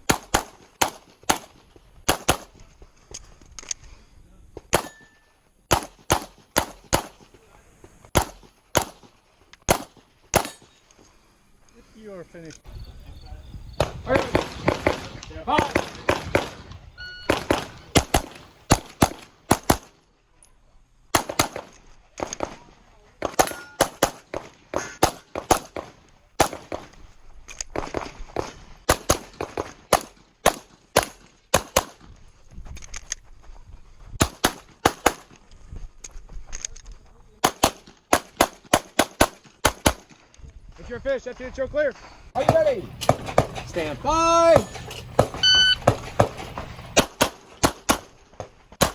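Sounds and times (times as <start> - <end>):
rapid pistol fire: 0.0 - 2.6, 5.7 - 7.3, 8.1 - 10.7, 13.8 - 20.0, 21.1 - 22.6, 23.2 - 26.9, 27.8 - 32.1, 34.2 - 35.3, 37.4 - 40.1, 45.2 - 48.2
ringing of steel targets: 4.8 - 5.4, 10.4 - 10.9, 23.4 - 24.0, 44.5 - 46.6.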